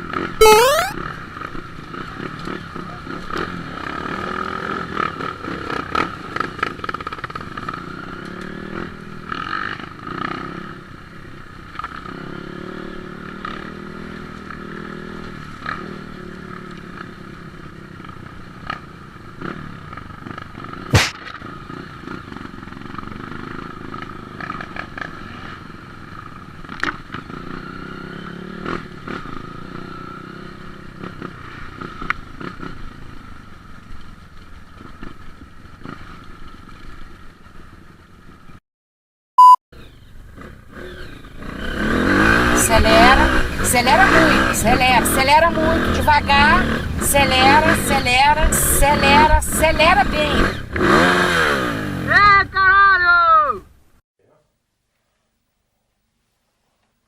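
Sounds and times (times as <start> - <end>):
sharp crack: 20.9 - 21.6.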